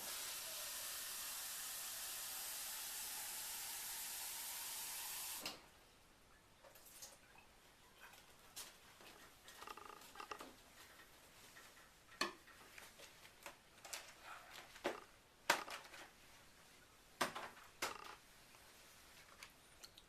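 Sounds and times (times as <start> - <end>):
utensils knocking and scraping: 9.5 - 10.5, 17.2 - 18.2.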